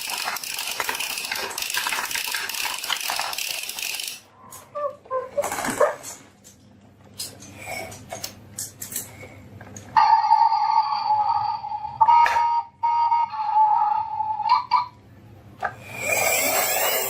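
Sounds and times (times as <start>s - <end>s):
marbles rattling along marble run: 0.0s - 4.3s.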